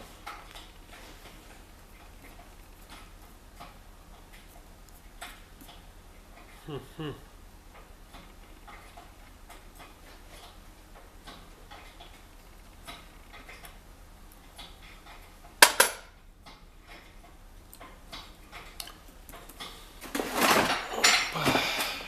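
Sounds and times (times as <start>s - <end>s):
metal clatter: 14.5s - 22.0s.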